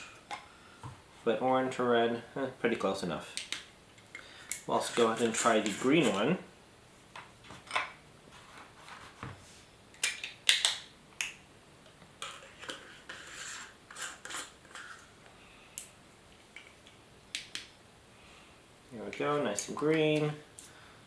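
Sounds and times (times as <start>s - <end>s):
rubbing and scraping: 4.7s - 6.3s, 8.3s - 9.7s, 12.2s - 15.1s.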